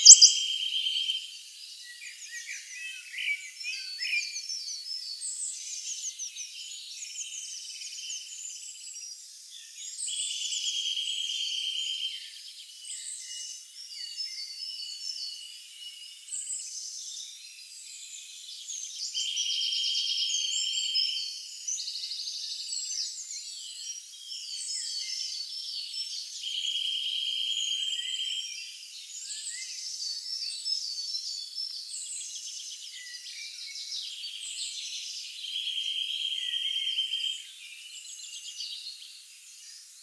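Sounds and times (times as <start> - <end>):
long even bird trill: 0.0 - 0.4
woodland birds singing: 0.0 - 40.0.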